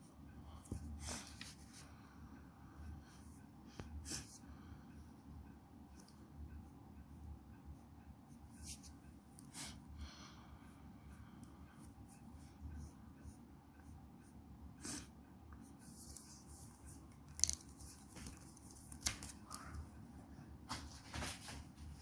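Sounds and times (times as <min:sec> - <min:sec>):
low steady hum: 0:00.0 - 0:22.0
drawing strokes on paper: 0:06.0 - 0:09.8, 0:10.6 - 0:18.8.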